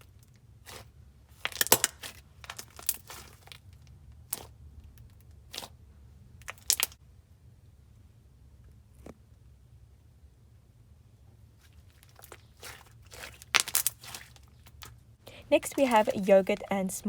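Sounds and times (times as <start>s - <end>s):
slime squished by hand crackling: 0.6s - 5.8s, 6.4s - 7.0s, 12.0s - 15.0s.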